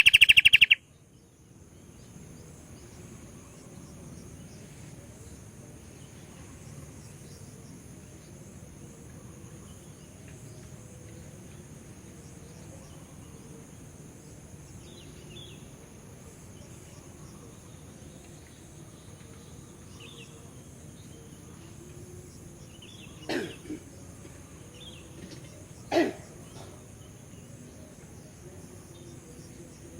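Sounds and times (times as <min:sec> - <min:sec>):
faint short chirps: 0:00.0 - 0:00.8.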